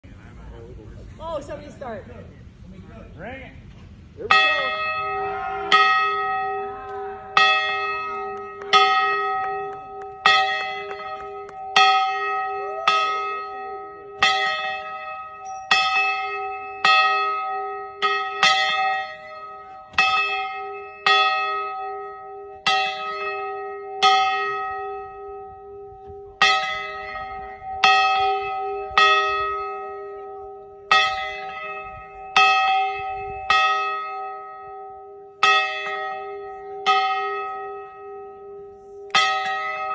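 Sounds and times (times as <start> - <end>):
large bell ringing: 4.2 - 39.9.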